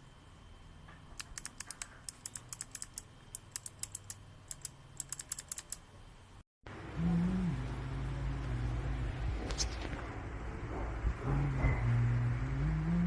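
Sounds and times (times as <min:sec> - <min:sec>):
clicky keyboard typing: 0:01.2 - 0:05.8
loud low hum: 0:06.7 - 0:13.0.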